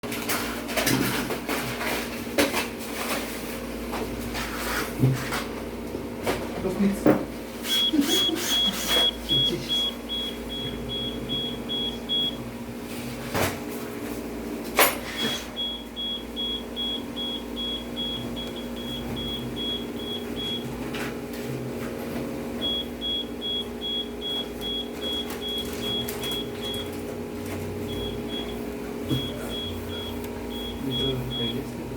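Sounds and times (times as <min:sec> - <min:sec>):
electronic buzzer rapid beeping: 0:07.7 - 0:12.4, 0:15.2 - 0:20.6.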